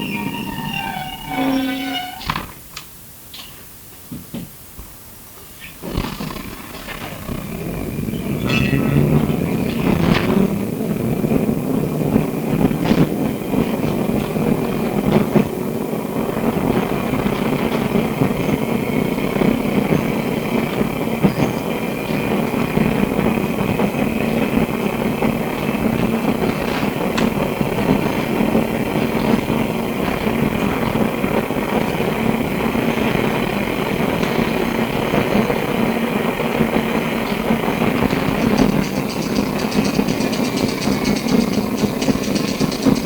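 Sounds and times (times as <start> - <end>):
faint high whine: 0.0 - 2.6
tram running hum: 0.0 - 2.8, 6.0 - 43.0
rapid fine ticking: 5.8 - 43.0
clicks: 37.2 - 43.0.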